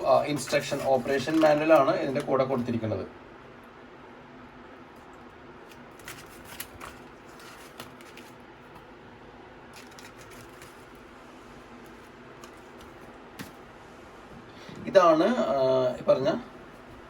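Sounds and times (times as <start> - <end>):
paper and cardboard rustling: 0.0 - 2.6, 5.7 - 8.9, 9.7 - 13.6
low background hum: 0.0 - 17.0.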